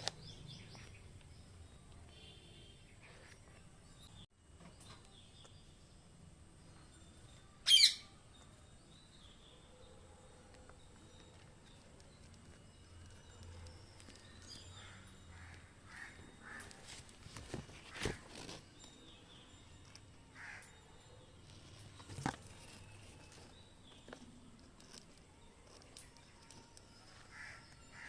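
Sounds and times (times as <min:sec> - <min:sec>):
faint background noise: 0:00.0 - 0:28.0
parrot call: 0:07.6 - 0:08.1.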